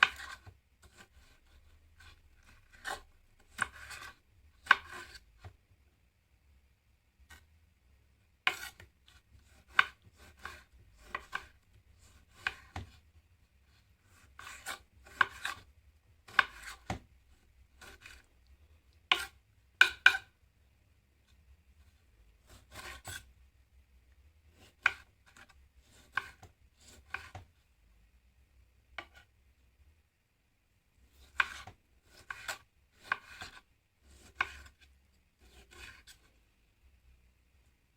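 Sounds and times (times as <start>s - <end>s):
knife chopping food: 0.0s - 5.5s, 8.5s - 13.0s, 14.1s - 17.1s, 19.1s - 20.3s, 22.5s - 23.2s, 24.5s - 27.5s, 31.2s - 34.8s.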